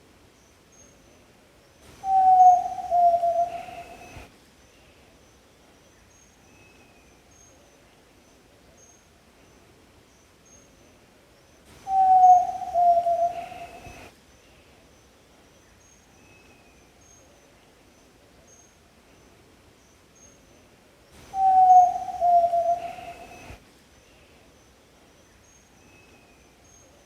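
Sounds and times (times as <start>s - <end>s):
bird hooting whistle call: 2.0s - 4.2s, 11.8s - 14.1s, 21.3s - 23.6s.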